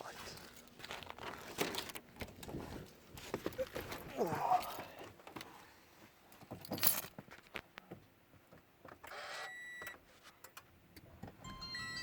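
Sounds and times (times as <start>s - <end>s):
electronic beep tones: 11.4s - 12.0s.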